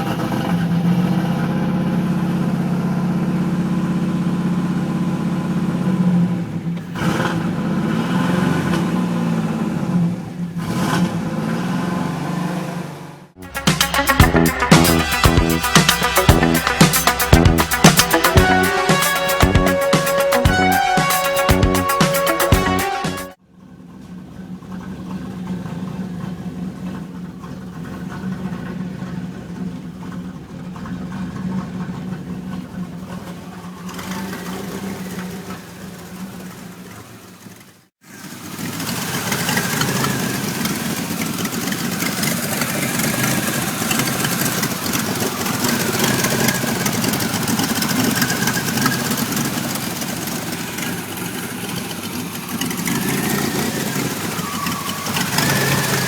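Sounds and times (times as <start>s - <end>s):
car engine idling roughly: 0.0s - 10.8s, 23.4s - 56.0s.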